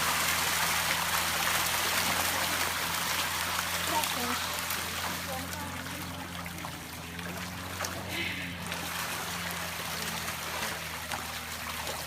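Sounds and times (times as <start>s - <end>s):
running water: 0.0s - 12.0s.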